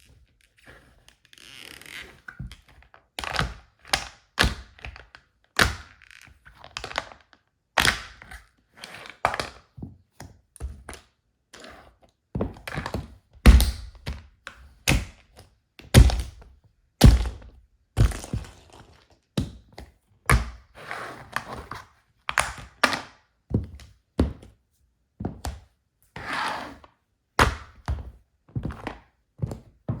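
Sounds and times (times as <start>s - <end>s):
shoes stomping heavy thuds: 13.5s - 14.1s, 16.0s - 16.4s, 17.0s - 18.4s.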